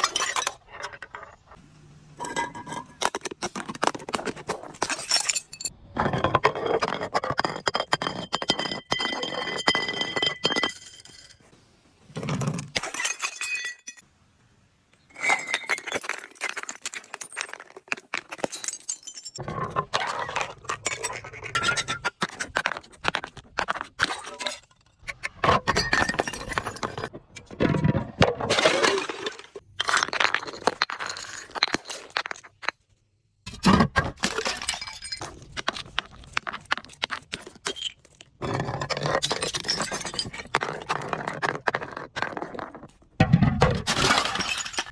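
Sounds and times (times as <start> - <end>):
glass bottles crushing and breaking: 0.0 - 1.3, 2.2 - 11.5, 12.2 - 14.1, 15.1 - 32.8, 33.5 - 44.9.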